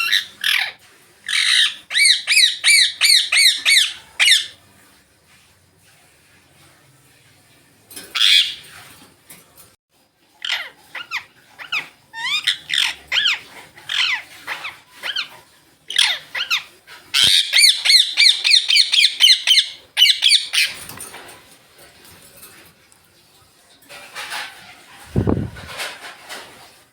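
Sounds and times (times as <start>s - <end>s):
parakeet chattering calls: 0.0s - 4.6s, 10.4s - 20.8s
parakeets squawking and shrieking: 0.0s - 4.6s, 8.1s - 8.8s, 10.4s - 20.9s.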